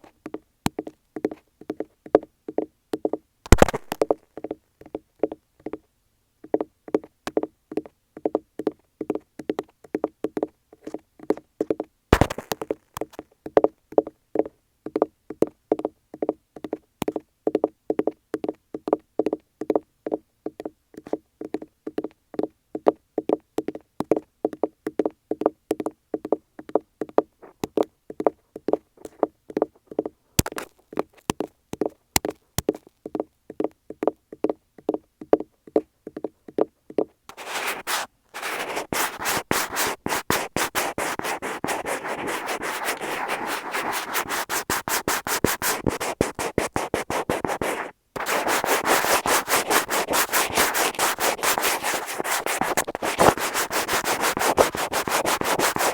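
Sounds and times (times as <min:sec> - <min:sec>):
fingernails tapping on microphone: 0:03.0 - 0:04.2, 0:25.8 - 0:55.9
fingers scratching microphone: 0:03.5 - 0:04.2, 0:12.2 - 0:13.2, 0:30.4 - 0:32.9, 0:37.0 - 0:55.9.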